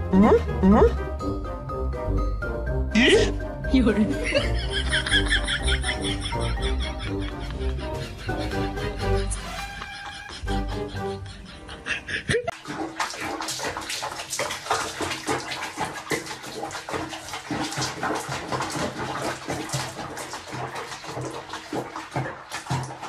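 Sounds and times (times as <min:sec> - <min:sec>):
water splashing in a bath: 0:03.0 - 0:10.4, 0:12.4 - 0:23.0.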